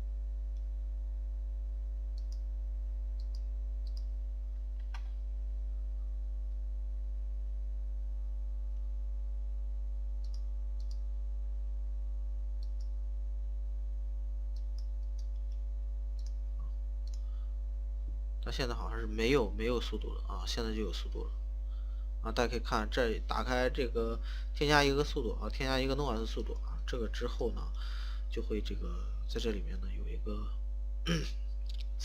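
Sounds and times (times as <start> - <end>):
low electrical hum: 0.0 - 32.0
computer mouse clicks: 2.2 - 2.4, 3.2 - 4.1, 10.2 - 11.0, 12.6 - 12.9, 17.0 - 17.2.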